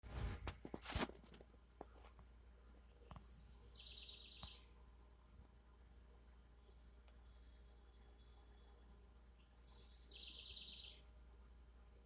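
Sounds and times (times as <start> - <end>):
songbird calling: 3.2 - 4.8, 9.4 - 11.1.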